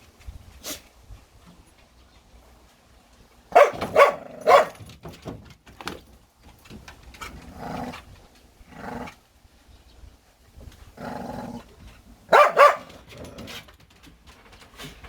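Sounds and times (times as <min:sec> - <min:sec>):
dog barking: 0:03.5 - 0:04.8, 0:12.3 - 0:13.0
dog growling: 0:07.3 - 0:09.2, 0:11.0 - 0:11.7.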